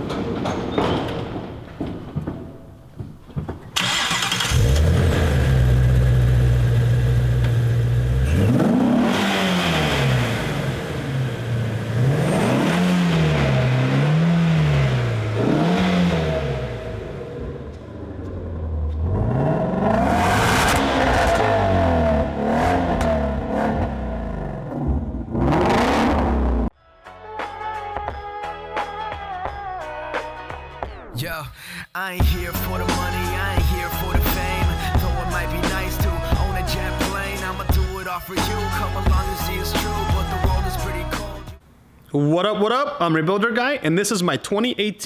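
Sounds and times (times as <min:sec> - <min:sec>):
car engine starting and revving: 0:03.8 - 0:26.7.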